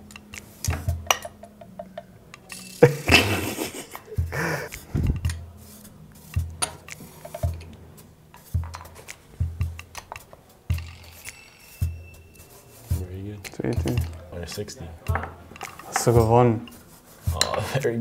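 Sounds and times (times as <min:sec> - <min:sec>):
background music with low beat: 0:00.0 - 0:18.0.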